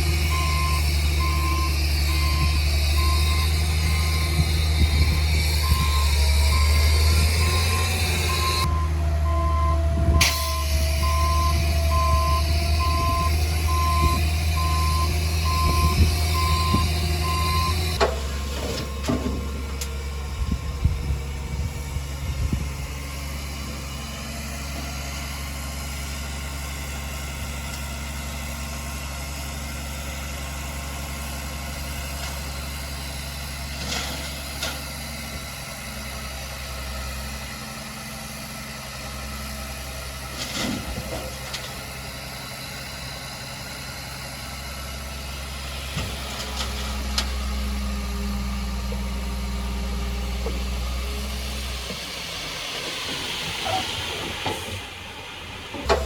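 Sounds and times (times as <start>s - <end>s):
diesel engine running: 0.0s - 56.0s
reversing alarm beeping: 0.1s - 18.0s
knocks and clanks: 55.7s - 56.0s.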